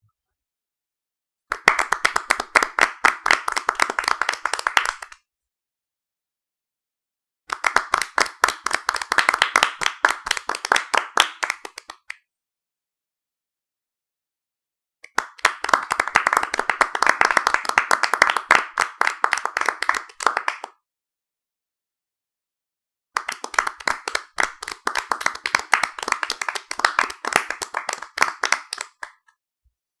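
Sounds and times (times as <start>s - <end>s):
hands clapping: 1.5s - 5.2s, 7.5s - 12.2s, 15.0s - 20.8s, 23.2s - 29.4s.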